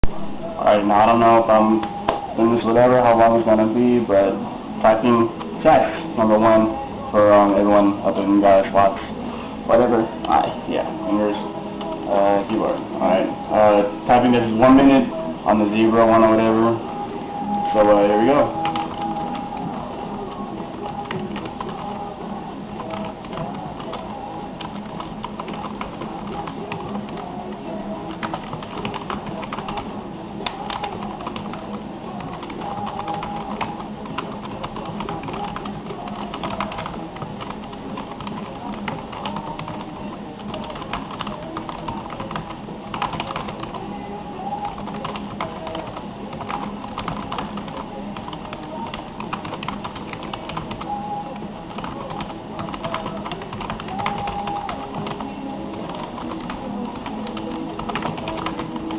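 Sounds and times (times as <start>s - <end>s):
background music: 0.0s - 58.9s
fast keyboard typing: 17.6s - 22.1s, 22.7s - 58.9s.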